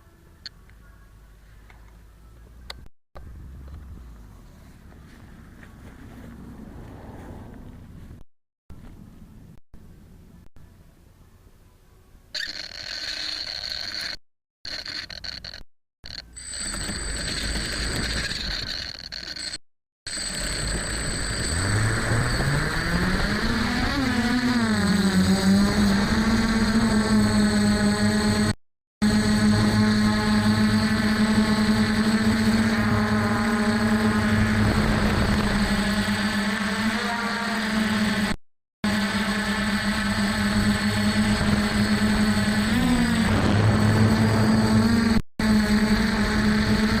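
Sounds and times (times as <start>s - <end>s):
thin high whine: 12.3s - 47.0s
drone motors humming: 12.4s - 47.0s.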